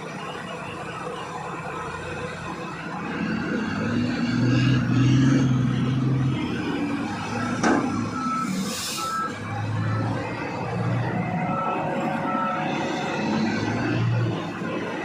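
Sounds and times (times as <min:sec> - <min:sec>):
air release hiss: 0:08.5 - 0:09.1.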